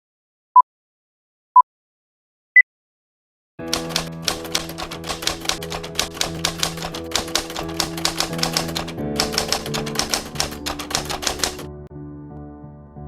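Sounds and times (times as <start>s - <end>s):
fast ticking beat of clicks: 3.6s - 11.7s
background music of held chords: 3.6s - 13.0s.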